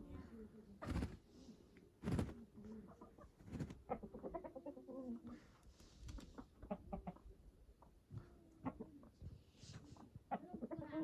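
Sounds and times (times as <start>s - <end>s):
chickens clucking: 2.4s - 11.0s.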